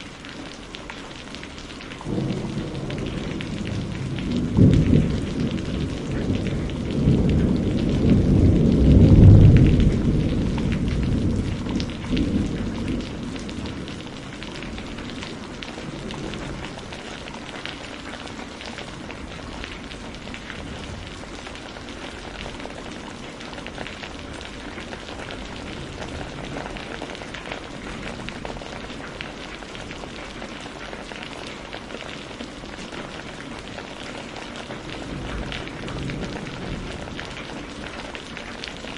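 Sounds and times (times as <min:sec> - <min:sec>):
heavy rain pouring: 0:00.0 - 0:38.9
thunder rolling: 0:02.1 - 0:17.2, 0:35.0 - 0:38.0.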